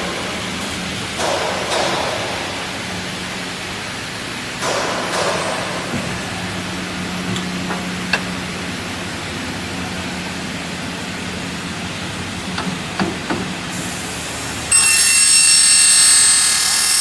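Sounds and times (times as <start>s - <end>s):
cutting saw humming: 14.6s - 17.0s.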